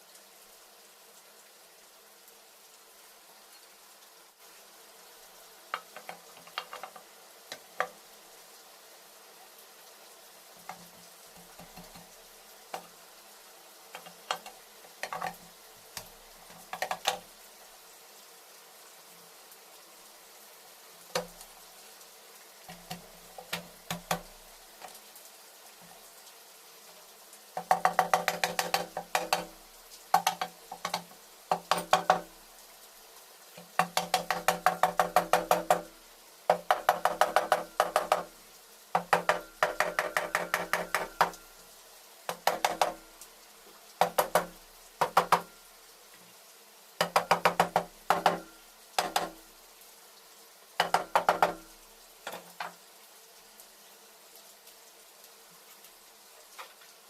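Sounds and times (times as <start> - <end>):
rapid ringing metal knocks: 27.6 - 32.3, 33.8 - 35.9, 36.5 - 38.3, 39.0 - 41.4, 42.3 - 43.0, 44.0 - 45.6, 47.0 - 49.4, 50.8 - 51.7.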